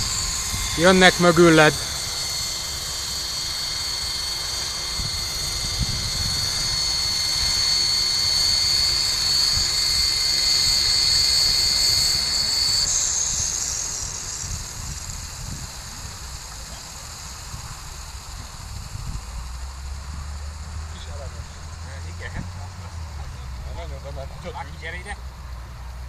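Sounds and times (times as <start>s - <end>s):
model helicopter high-pitched whine: 0.0s - 26.0s.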